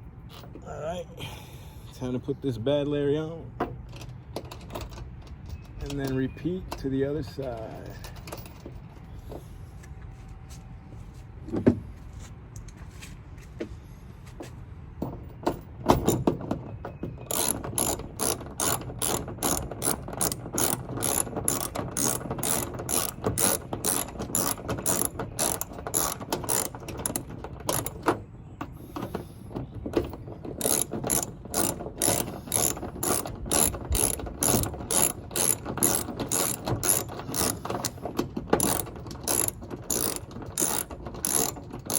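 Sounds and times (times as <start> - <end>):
socket ratchet clicking: 17.3 - 28.1, 30.5 - 38.0, 38.6 - 41.9.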